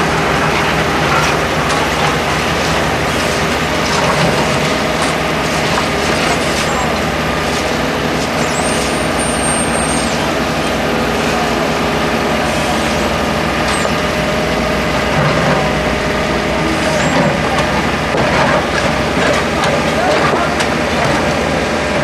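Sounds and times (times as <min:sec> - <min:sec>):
heavy machine engine running: 0:00.0 - 0:22.0
high squeal: 0:08.2 - 0:10.5, 0:12.4 - 0:14.1.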